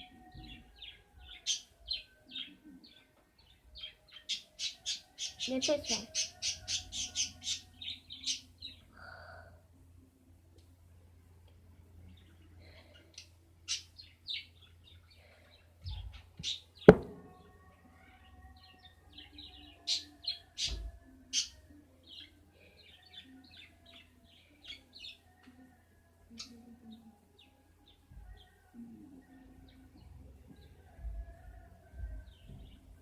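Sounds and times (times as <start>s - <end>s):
small birds chirping: 0.0s - 9.6s, 11.5s - 33.0s
sharp knock: 16.9s - 17.4s
soft handling thumps: 16.9s - 17.5s.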